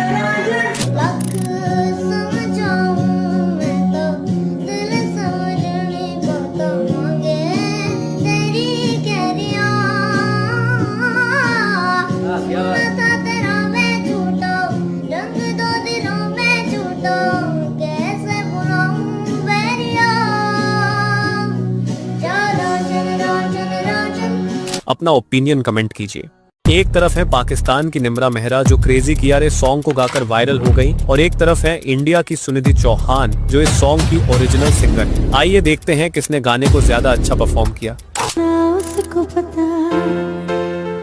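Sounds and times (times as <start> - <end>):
instrumental backing: 26.7 - 41.0
person singing: 36.6 - 40.6.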